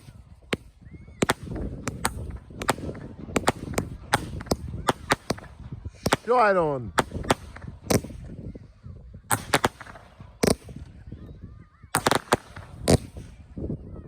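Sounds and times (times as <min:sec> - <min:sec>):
fireworks bangs: 0:00.0 - 0:11.2, 0:11.9 - 0:13.6.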